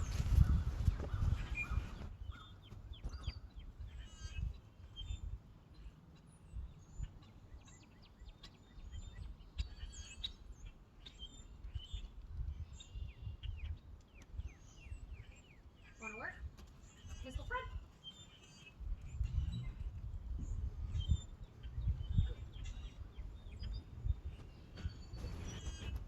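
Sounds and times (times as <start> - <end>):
small birds chirping: 0.0 - 26.0
low rumble: 19.1 - 21.1.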